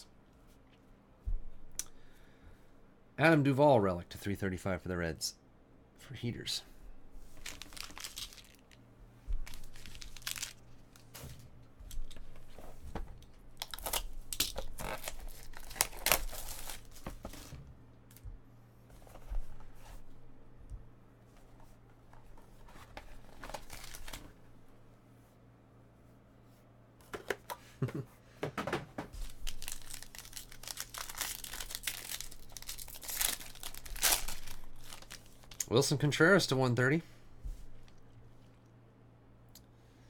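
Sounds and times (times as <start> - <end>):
packaging tearing and crinkling: 7.4 - 8.8, 9.5 - 11.2, 13.6 - 17.0, 23.3 - 24.2, 29.2 - 35.7.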